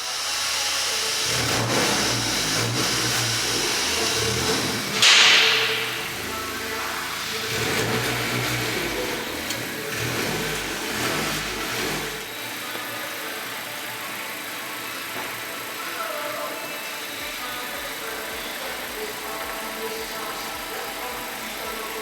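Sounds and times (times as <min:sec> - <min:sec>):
car engine low rumble: 0:01.1 - 0:12.3.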